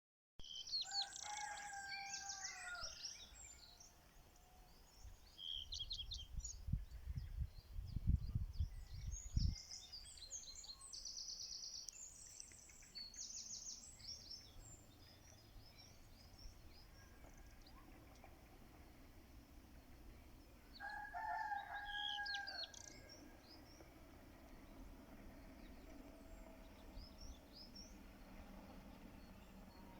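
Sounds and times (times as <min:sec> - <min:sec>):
songbirds chirping and trilling: 0:00.4 - 0:29.9
rooster crowing: 0:00.8 - 0:03.1, 0:20.8 - 0:23.0.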